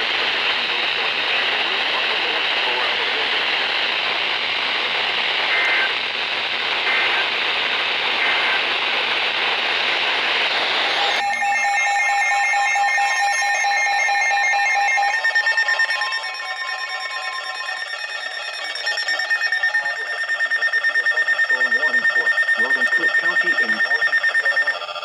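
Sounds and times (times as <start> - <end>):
radio static hiss: 0.0 - 11.2, 14.4 - 25.0
electronic alert tone: 10.9 - 24.8
two-pitch data chirps: 10.9 - 24.8.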